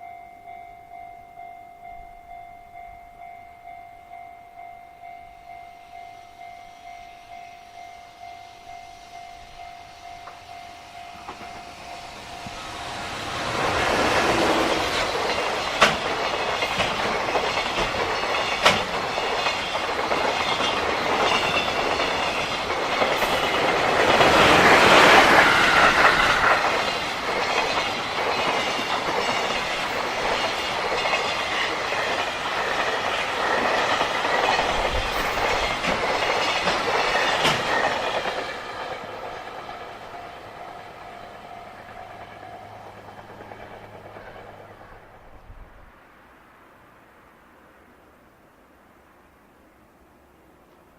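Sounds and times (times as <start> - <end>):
level-crossing bell ringing: 0.0 - 16.4
train wheels clattering over rail joints: 11.2 - 45.3.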